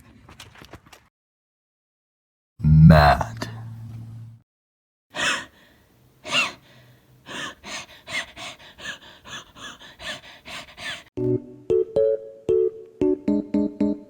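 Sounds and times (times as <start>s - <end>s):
person wheezing: 5.2s - 5.6s, 6.3s - 11.1s
keyboard music: 11.2s - 14.0s.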